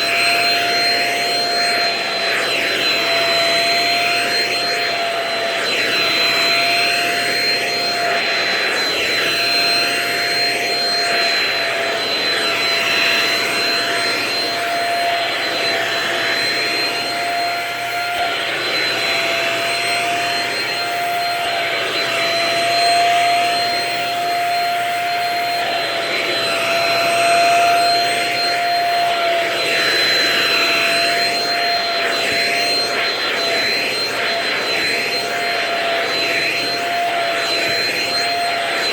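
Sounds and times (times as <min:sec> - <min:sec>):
vacuum cleaner running: 0:00.0 - 0:38.9.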